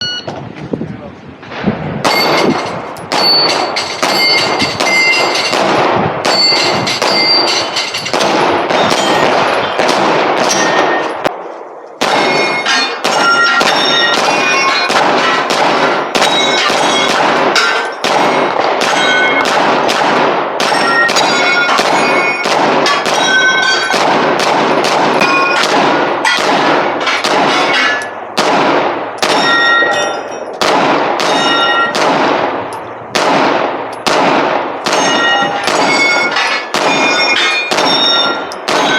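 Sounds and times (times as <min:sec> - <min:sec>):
gunshots: 0:01.4 - 0:38.9
steel targets ringing: 0:02.0 - 0:11.2, 0:12.0 - 0:19.6, 0:20.6 - 0:24.1, 0:25.1 - 0:28.3, 0:29.2 - 0:30.6, 0:31.2 - 0:32.0, 0:34.8 - 0:38.9.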